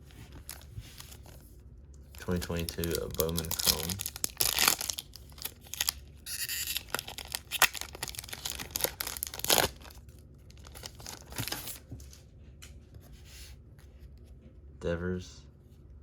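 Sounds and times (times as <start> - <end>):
wrapper tearing and crinkling: 0.3 - 1.4, 2.1 - 11.8.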